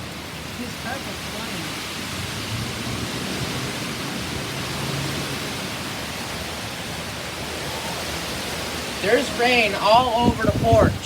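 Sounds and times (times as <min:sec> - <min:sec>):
heavy rain pouring: 0:00.0 - 0:11.0
strong wind: 0:00.0 - 0:11.0.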